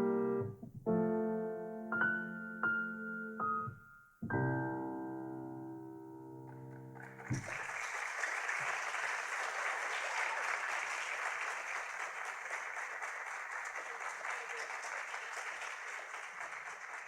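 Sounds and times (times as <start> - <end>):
audience applauding: 6.7 - 17.0.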